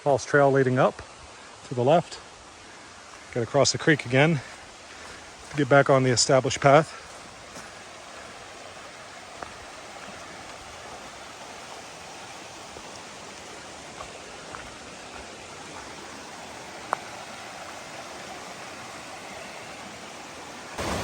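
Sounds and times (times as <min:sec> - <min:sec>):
creek rushing over rocks: 0:00.1 - 0:21.0.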